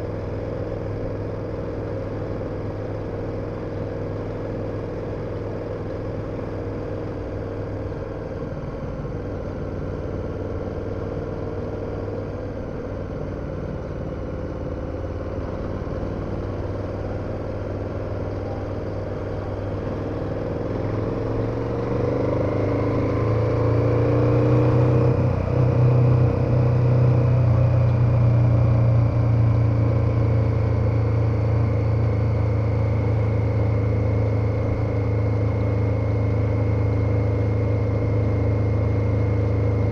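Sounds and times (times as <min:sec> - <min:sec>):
motorcycle engine accelerating: 0:12.9 - 0:39.9.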